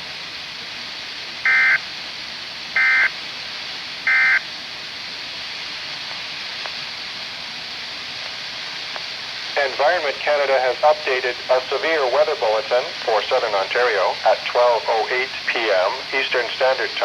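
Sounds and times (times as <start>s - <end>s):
radio hiss: 0.0s - 17.0s
buzzy two-tone data bursts: 4.1s - 4.4s.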